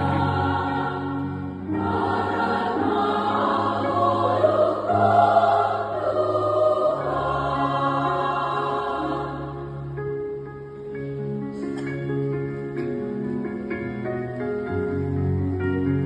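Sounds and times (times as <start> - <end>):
women's choir singing a hymn: 0.0 - 10.0.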